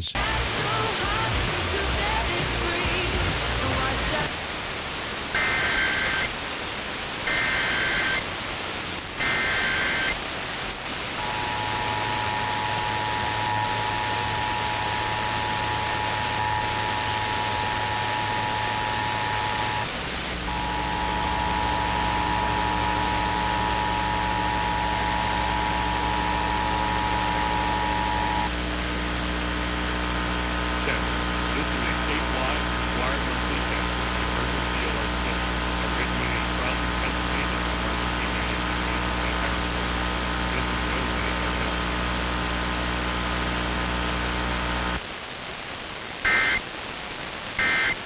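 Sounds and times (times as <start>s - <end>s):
steady electrical hum: 0.0s - 45.2s, 46.2s - 46.6s, 47.6s - 48.0s
static hiss: 0.0s - 48.0s
buzzing data tones: 5.3s - 6.3s, 7.2s - 8.3s, 9.1s - 10.2s, 11.2s - 42.2s, 46.2s - 46.7s, 47.6s - 48.0s
two-tone attention signal: 11.2s - 19.8s, 20.5s - 28.5s, 46.3s - 46.6s, 47.6s - 48.0s.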